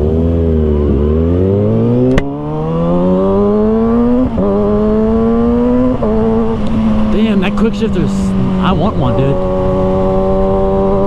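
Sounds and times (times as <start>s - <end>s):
motorcycle engine accelerating hard: 0.0s - 11.0s.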